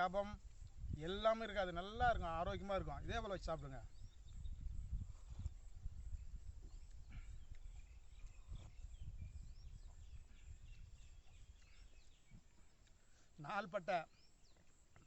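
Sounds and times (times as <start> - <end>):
faint bird chirps: 3.4 - 15.0.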